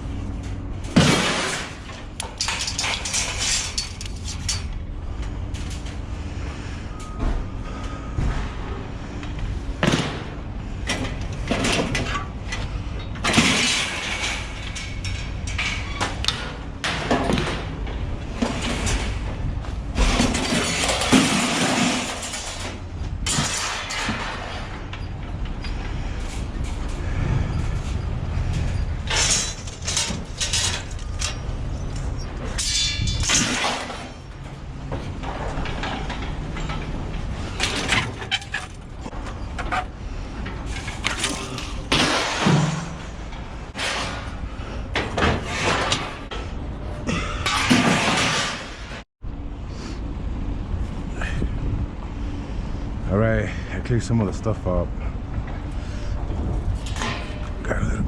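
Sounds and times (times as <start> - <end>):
scrap metal clanging: 0.2 - 9.2, 10.9 - 49.0
low rumble: 17.8 - 37.8.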